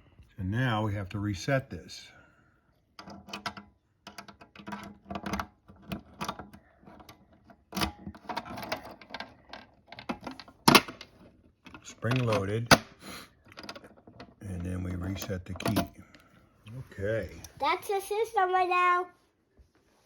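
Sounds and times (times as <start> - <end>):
small metallic clicks and rattles: 3.0 - 12.8, 13.4 - 16.2.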